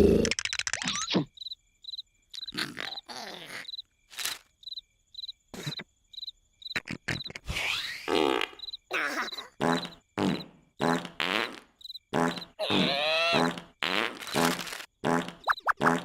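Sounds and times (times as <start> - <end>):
cartoon snoring and snorts: 0.0 - 0.4, 2.5 - 3.8, 6.8 - 16.0
cricket chirping: 0.0 - 16.0.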